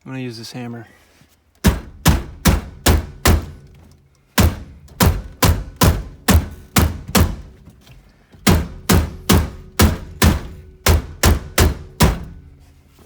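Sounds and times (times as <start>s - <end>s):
hammer striking steering wheel: 1.6s - 12.6s.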